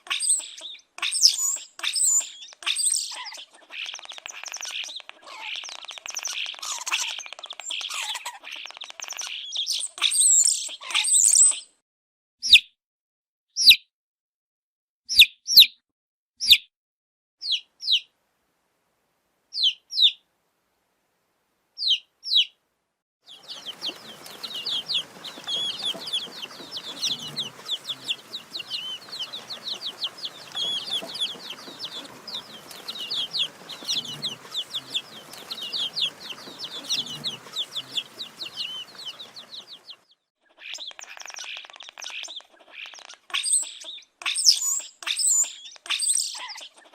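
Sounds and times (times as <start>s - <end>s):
baby chicks peeping: 0.0s - 11.6s, 17.4s - 18.1s, 19.6s - 20.2s, 21.8s - 22.6s, 23.3s - 46.9s
background hiss: 23.3s - 40.0s.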